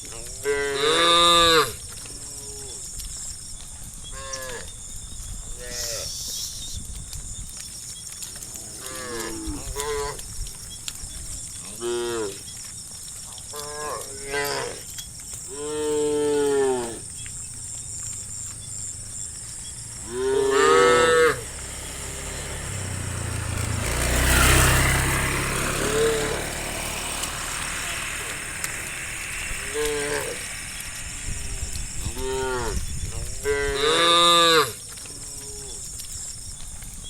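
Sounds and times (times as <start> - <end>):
cows mooing: 0.3 - 2.8, 8.5 - 10.2, 11.6 - 12.4, 13.5 - 14.9, 15.5 - 17.1, 19.4 - 35.9
low rumbling noise: 24.9 - 33.9.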